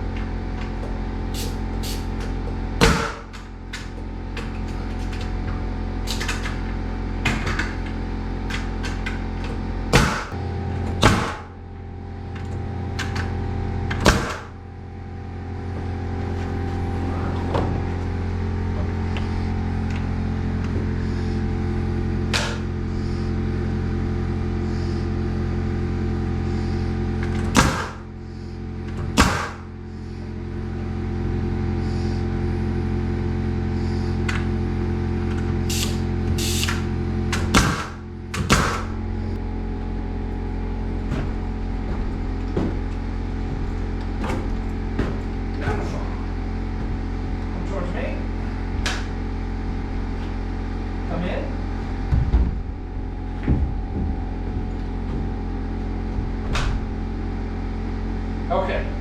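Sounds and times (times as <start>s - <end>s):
steady motor hum: 0.0s - 59.0s
nails being driven into lumber: 9.9s - 10.3s, 37.3s - 38.9s.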